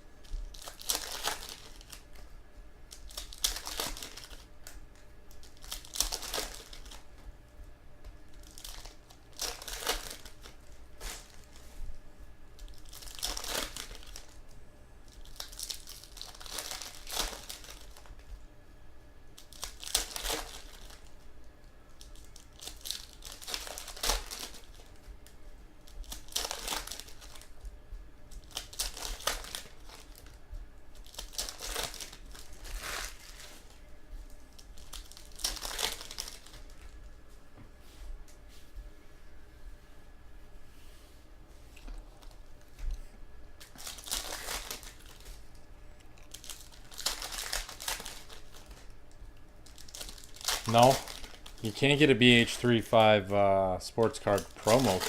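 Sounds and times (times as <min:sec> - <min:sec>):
plastic packaging crinkling: 0:00.2 - 0:02.3, 0:02.9 - 0:07.1, 0:08.3 - 0:11.8, 0:12.6 - 0:18.2, 0:19.3 - 0:21.2, 0:21.9 - 0:25.1, 0:25.8 - 0:27.6, 0:28.3 - 0:37.0, 0:43.6 - 0:53.3, 0:54.0 - 0:55.0.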